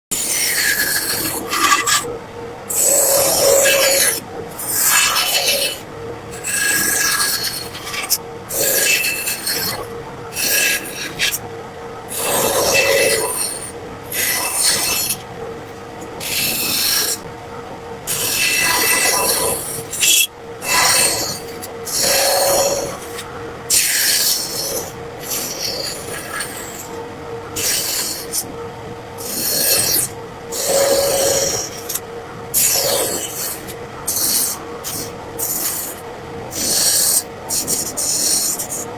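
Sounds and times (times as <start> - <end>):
hand tool scraping wood: 0.5 - 2.0, 12.1 - 15.2.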